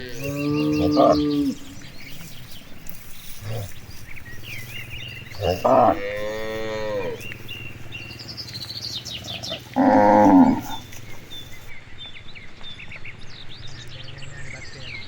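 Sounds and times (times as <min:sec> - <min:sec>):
cattle mooing: 0:00.0 - 0:08.2, 0:09.1 - 0:11.4
birds chirping: 0:00.0 - 0:15.0.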